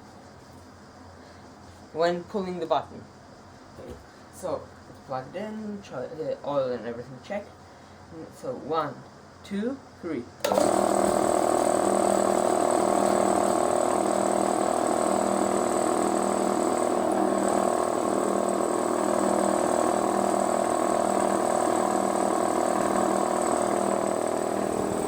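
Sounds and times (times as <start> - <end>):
air compressor running: 10.4 - 25.0.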